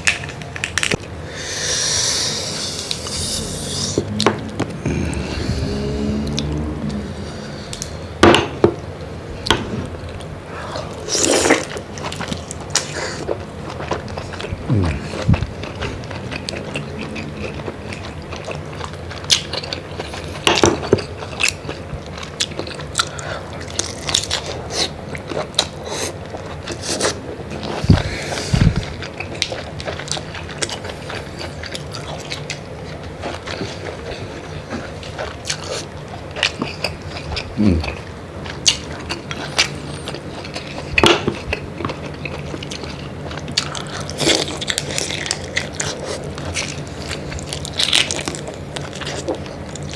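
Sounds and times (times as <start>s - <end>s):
shells crunching and cracking: 0.0s - 1.1s
crunching while eating: 0.0s - 8.0s, 9.4s - 49.9s
wet chewing: 9.4s - 49.9s.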